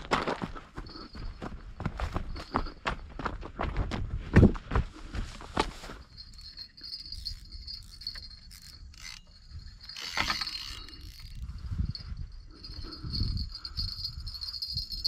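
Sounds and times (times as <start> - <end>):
fishing reel whirring: 6.1 - 12.0.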